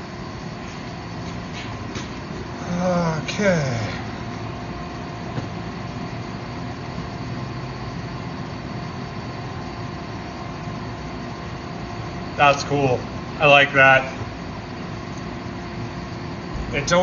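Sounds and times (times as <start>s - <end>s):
blowing hum of equipment: 0.0s - 17.0s.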